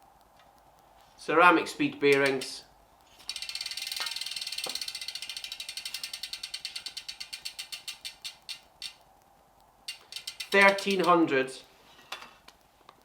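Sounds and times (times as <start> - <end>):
bicycle freehub ticking: 2.1 - 11.6.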